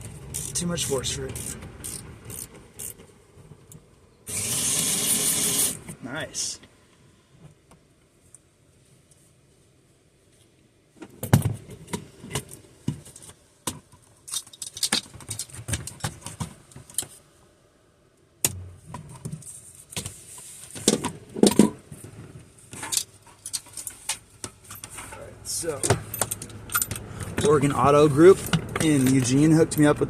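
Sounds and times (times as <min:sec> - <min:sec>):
metallic clinks and rattles: 0:14.2 - 0:16.2, 0:22.8 - 0:30.0.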